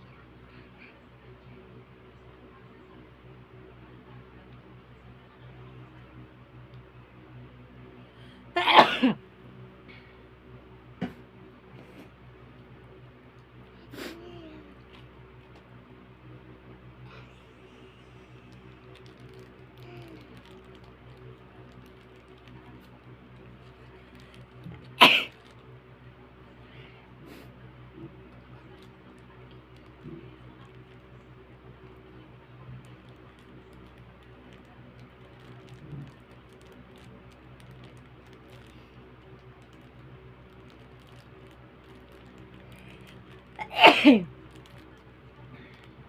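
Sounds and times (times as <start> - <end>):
faint steady hum: 0.0 - 46.0
person sneezing: 25.0 - 25.3, 43.6 - 44.3.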